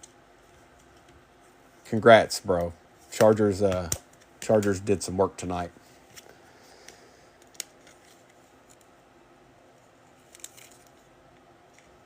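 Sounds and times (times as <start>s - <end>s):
cards rustling: 5.9s - 9.0s, 10.0s - 11.1s.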